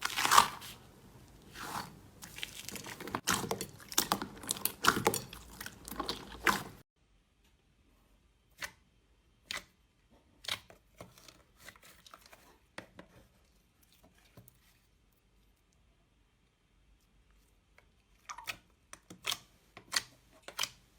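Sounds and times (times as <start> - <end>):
crunchy slime crackling: 0.0 - 6.8
slime squishing and popping: 1.6 - 6.8.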